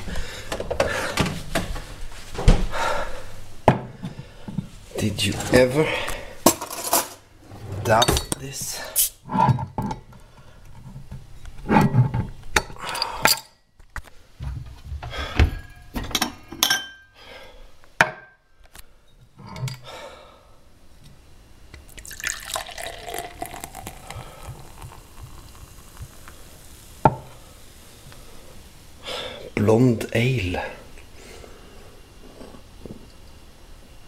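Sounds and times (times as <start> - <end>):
bottle and glass clinking: 8.0 - 8.4, 22.0 - 26.1
beer pouring into glass: 21.9 - 27.4.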